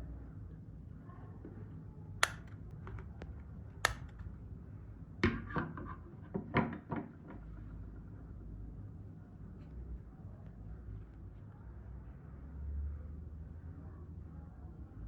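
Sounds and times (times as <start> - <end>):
metal hand tools clicking: 2.2 - 2.5, 3.9 - 4.2.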